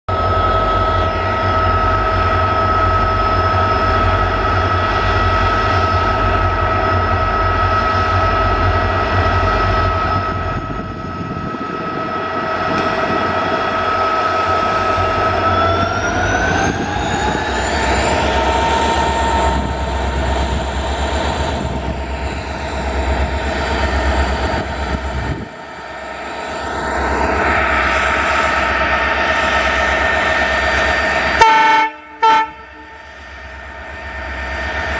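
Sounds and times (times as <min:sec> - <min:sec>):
diesel locomotive engines rumbling: 0:00.1 - 0:34.9.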